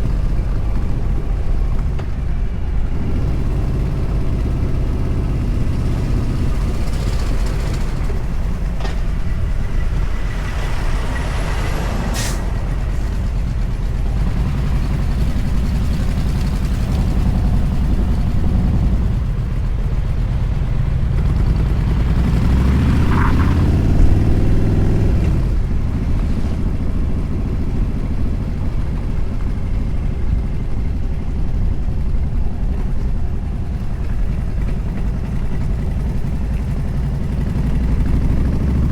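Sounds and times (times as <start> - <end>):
motorcycle engine: 0.0 - 38.9
wind buffeting microphone: 0.0 - 38.9
brief sharp hiss: 11.6 - 13.1.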